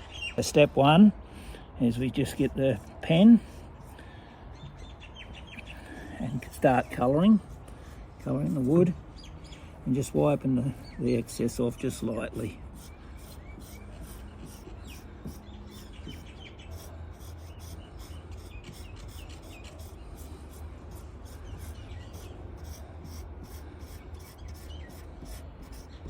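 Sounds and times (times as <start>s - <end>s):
rubbing on wooden tabletop: 12.7s - 20.0s.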